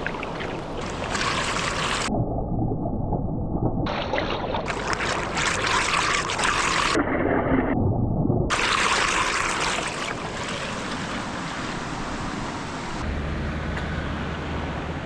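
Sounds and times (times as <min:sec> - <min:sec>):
low rumble: 0:02.1 - 0:04.0, 0:07.0 - 0:08.5.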